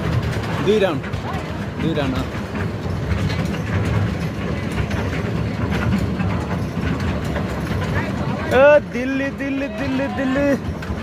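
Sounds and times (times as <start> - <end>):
train rumble: 0.0 - 11.0.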